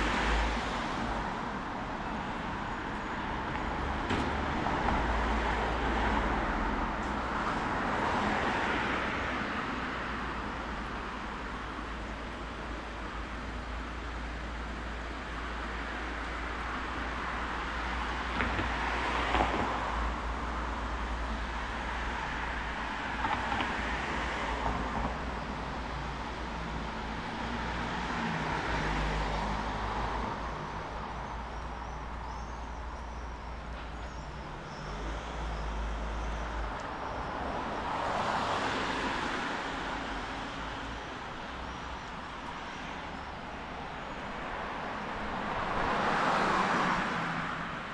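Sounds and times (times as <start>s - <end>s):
cars passing on wet road: 0.0s - 47.9s
city background noise: 0.0s - 47.9s.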